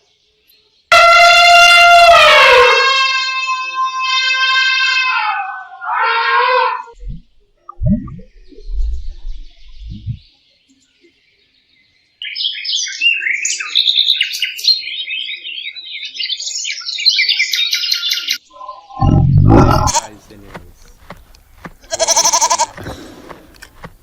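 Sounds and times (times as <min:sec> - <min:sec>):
small birds chirping: 0:06.8 - 0:24.0
muffled low thumps: 0:07.0 - 0:10.2.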